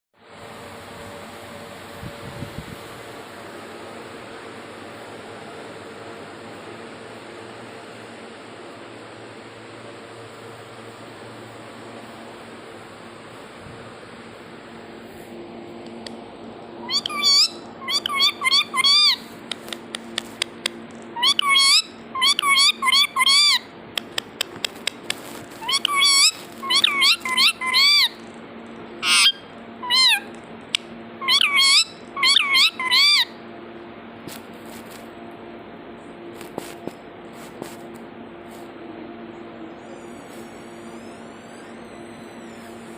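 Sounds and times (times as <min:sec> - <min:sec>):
parrot calling: 0:16.8 - 0:19.9, 0:21.1 - 0:28.3, 0:29.0 - 0:30.4, 0:31.2 - 0:33.4
parrot clicks: 0:19.4 - 0:21.6, 0:24.0 - 0:27.4.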